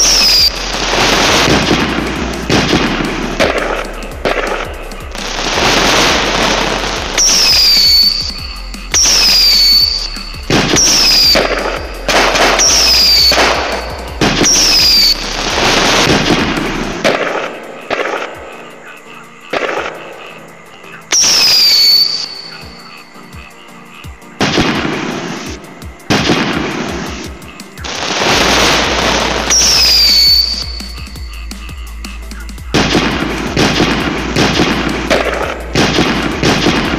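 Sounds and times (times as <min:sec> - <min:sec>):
firework whistles: 0:00.0 - 0:18.3, 0:21.1 - 0:22.8, 0:24.4 - 0:31.3
firework crackling bursts: 0:00.0 - 0:18.7, 0:21.1 - 0:22.8, 0:24.4 - 0:31.3, 0:32.2 - 0:36.9.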